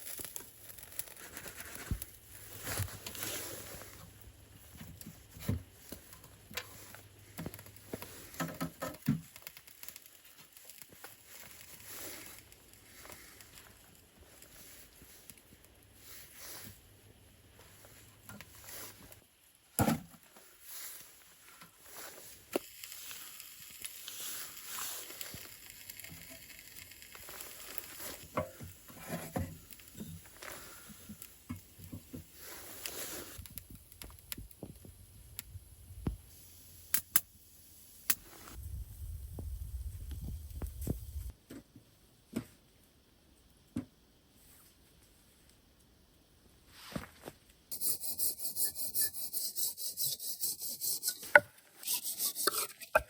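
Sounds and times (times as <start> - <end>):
rustling and handling noises: 0.0 - 19.5, 20.1 - 35.2.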